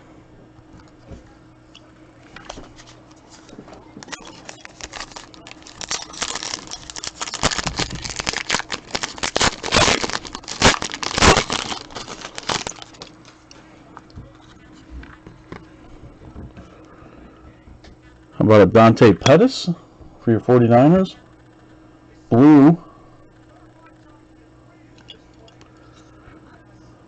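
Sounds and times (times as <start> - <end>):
wrapper crinkling and tearing: 4.0 - 13.3.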